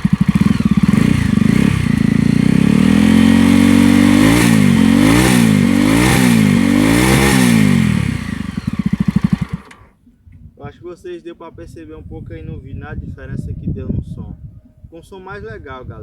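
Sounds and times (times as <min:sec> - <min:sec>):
motorcycle engine revving: 0:00.0 - 0:09.9.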